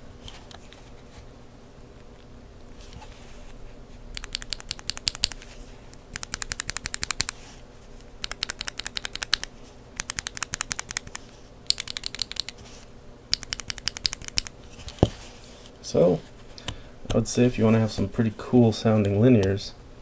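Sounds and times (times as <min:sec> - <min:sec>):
mechanical keyboard switches clacking: 0:04.2 - 0:05.5, 0:06.1 - 0:07.4, 0:08.2 - 0:12.5, 0:13.3 - 0:14.5.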